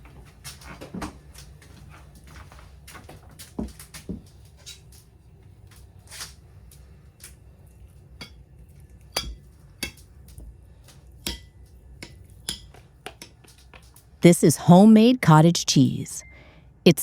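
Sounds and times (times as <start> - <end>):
dishes and utensils clinking: 11.2 - 13.9.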